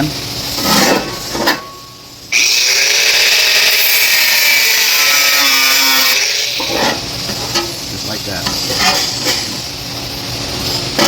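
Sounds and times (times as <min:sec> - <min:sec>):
cutoff wheel grinding metal: 0:02.3 - 0:07.7.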